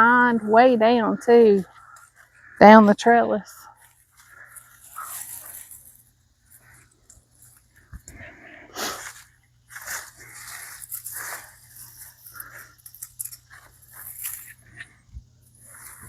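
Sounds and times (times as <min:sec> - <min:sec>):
foliage rustling and crunching: 0:03.7 - 0:07.8, 0:08.8 - 0:16.0.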